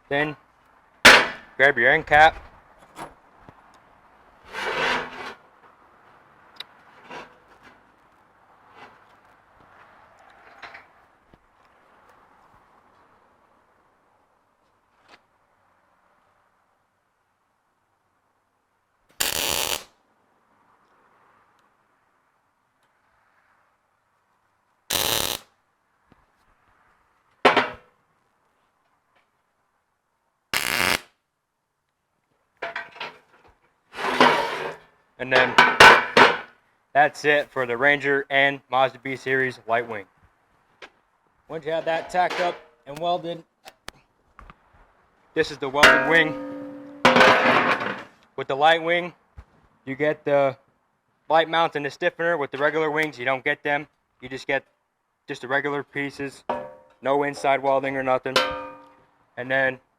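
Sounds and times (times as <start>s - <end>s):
metal clank: 1.1s - 1.5s, 27.5s - 27.8s, 32.6s - 33.3s, 34.0s - 34.8s, 35.4s - 36.5s, 41.8s - 42.8s, 45.8s - 48.1s, 56.5s - 57.0s, 58.4s - 59.0s
metal parts scraping: 4.5s - 5.4s, 32.6s - 36.5s, 41.6s - 42.7s
welding crackling buzz: 19.2s - 19.9s, 24.9s - 25.5s, 30.5s - 31.1s.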